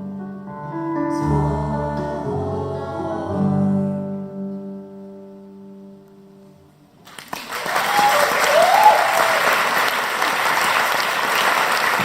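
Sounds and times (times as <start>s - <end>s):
audience applause: 7.0s - 12.0s
audience cheer: 7.2s - 12.0s.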